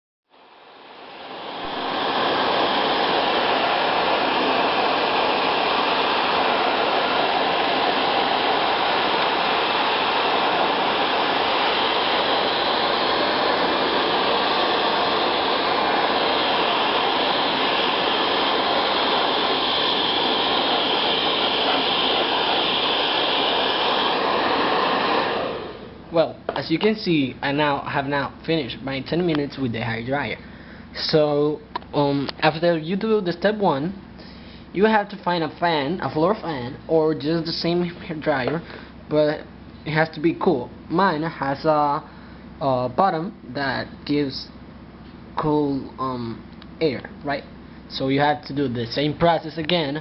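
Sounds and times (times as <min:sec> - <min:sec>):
hair dryer running: 0:00.4 - 0:26.6.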